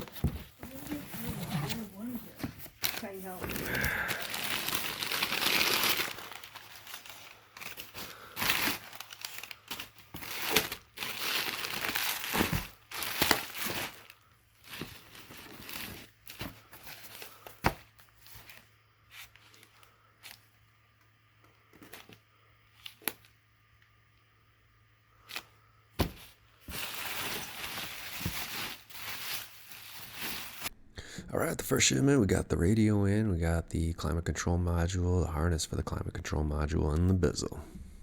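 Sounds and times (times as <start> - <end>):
packaging crinkling and tearing: 0.0 - 20.4, 25.3 - 30.7.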